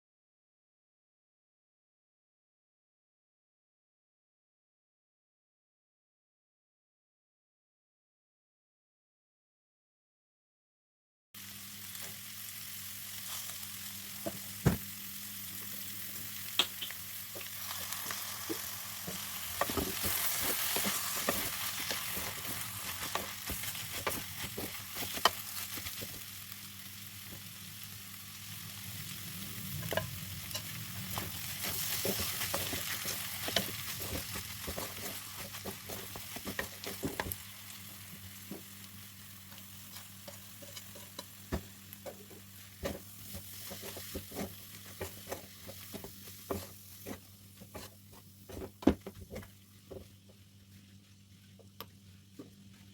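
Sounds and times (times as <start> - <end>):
food sizzling in hot oil: 11.4 - 50.0
utensil scraping a pan: 17.7 - 26.1, 29.8 - 37.4, 39.8 - 49.4.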